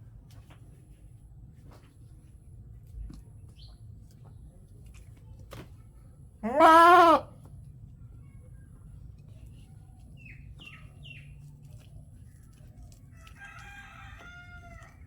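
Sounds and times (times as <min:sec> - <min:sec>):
rooster crowing faintly: 0:13.1 - 0:15.0.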